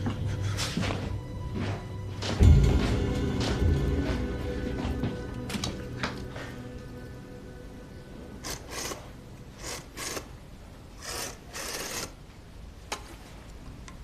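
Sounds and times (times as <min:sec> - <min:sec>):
rasping scrapes: 0:11.0 - 0:12.1.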